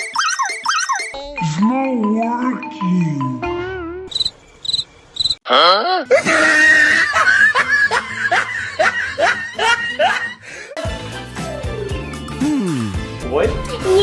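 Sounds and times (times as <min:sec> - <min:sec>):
short high beeps: 0:00.0 - 0:01.2
person laughing loudly: 0:06.0 - 0:10.3.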